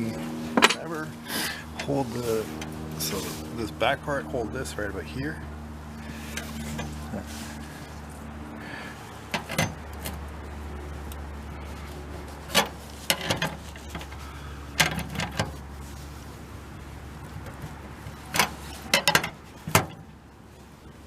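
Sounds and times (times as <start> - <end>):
steady low hum: 0.0 - 21.0
sharp metal clicks and knocks: 18.3 - 20.0.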